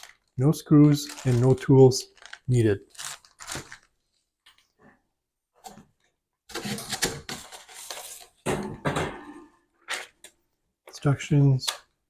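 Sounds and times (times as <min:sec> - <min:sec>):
packaging rustling and crinkling: 0:00.0 - 0:04.2.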